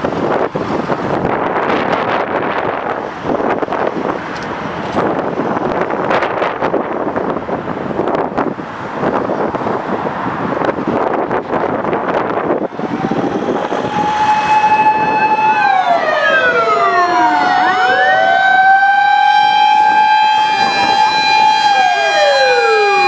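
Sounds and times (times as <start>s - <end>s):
siren wailing: 12.5s - 23.0s
second siren tone: 12.7s - 23.0s.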